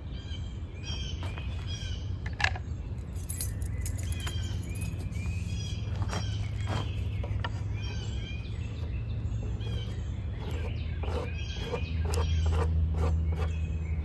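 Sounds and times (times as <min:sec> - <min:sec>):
low steady rumble: 0:00.0 - 0:14.0
songbirds calling: 0:00.0 - 0:14.0
knife scraping ferro rod: 0:09.4 - 0:13.5.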